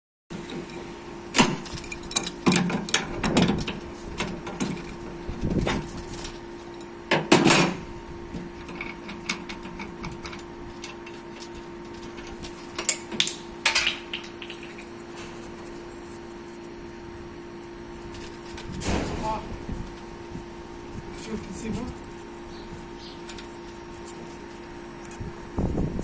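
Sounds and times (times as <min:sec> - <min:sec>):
steady low hum: 0:00.3 - 0:26.0
metal tools knocking and clinking: 0:12.8 - 0:14.9.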